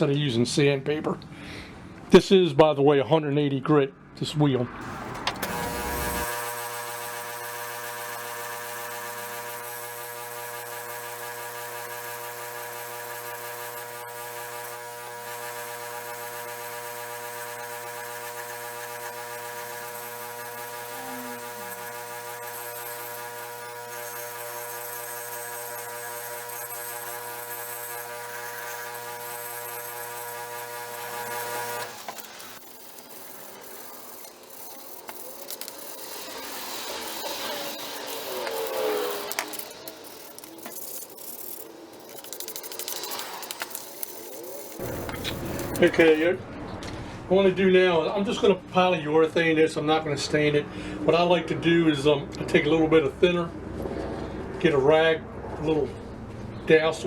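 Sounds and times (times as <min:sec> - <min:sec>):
power tool sanding wheel whirring: 0:04.8 - 0:46.3.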